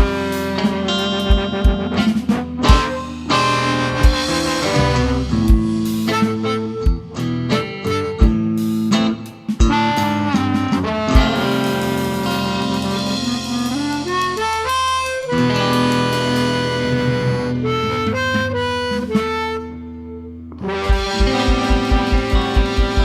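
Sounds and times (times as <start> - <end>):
pulsing low beat: 0.0 - 19.7, 20.6 - 23.0
blues band playing: 0.0 - 23.0
lead instrument holding long notes: 0.0 - 23.0.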